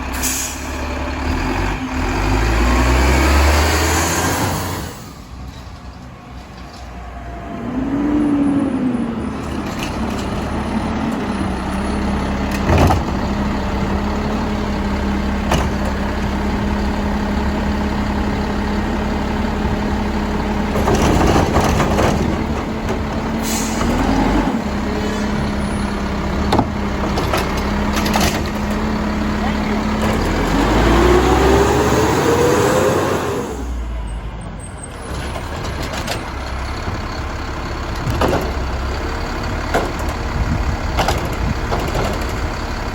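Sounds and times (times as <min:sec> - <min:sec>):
short sharp hisses: 0:00.1 - 0:00.7
garbage truck engine running: 0:07.1 - 0:42.9.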